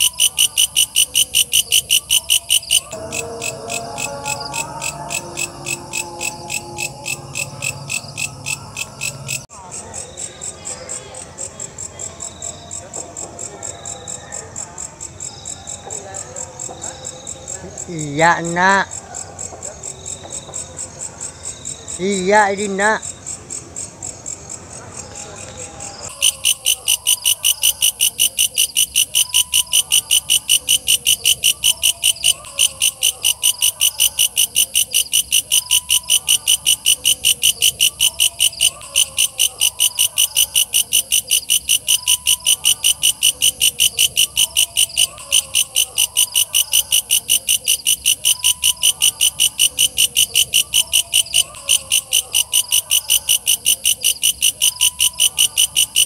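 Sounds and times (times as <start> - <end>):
faint wavering insect call: 0.0 - 11.0, 25.2 - 56.0
bush cricket chirping: 0.0 - 14.2, 15.1 - 56.0.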